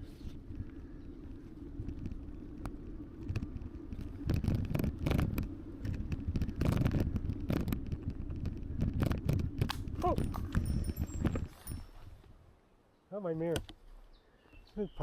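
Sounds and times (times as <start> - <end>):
road rumble: 0.0 - 12.6
wind: 0.0 - 15.0
bike rattling and knocking: 3.2 - 11.8.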